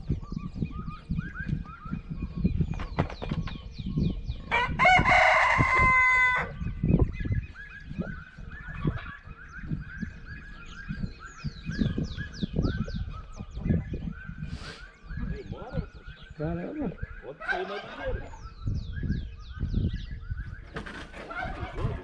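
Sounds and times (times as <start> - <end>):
small birds chirping: 0.0 - 22.0
rooster crowing: 4.5 - 6.6.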